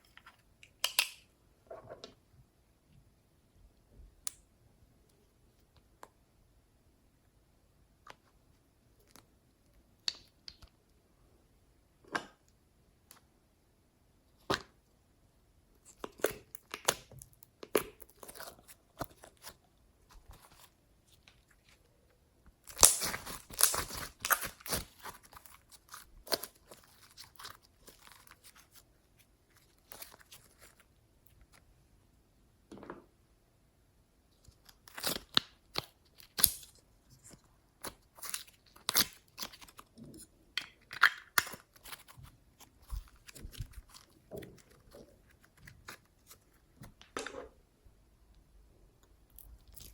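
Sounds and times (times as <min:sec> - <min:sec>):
sticky slime crackling and popping: 0:22.6 - 0:28.7, 0:34.8 - 0:36.8.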